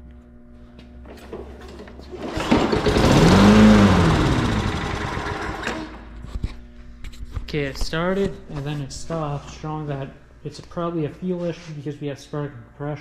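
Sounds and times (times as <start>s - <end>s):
lawn mower engine firing: 1.2s - 6.0s.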